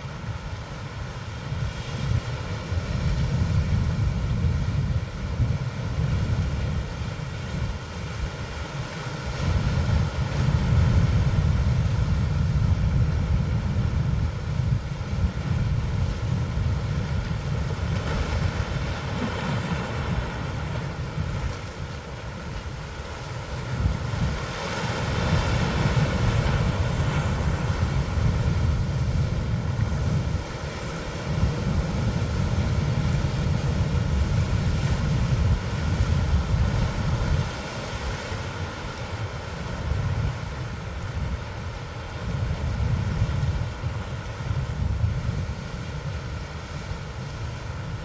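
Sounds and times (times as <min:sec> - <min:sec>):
ocean surf washing: 0:00.0 - 0:48.0
wind buffeting microphone: 0:00.0 - 0:48.0.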